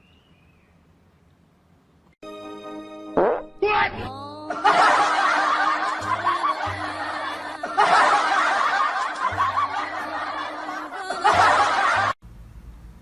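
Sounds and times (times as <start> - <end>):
background music: 2.2 - 12.1
crowd laughing: 4.5 - 12.2.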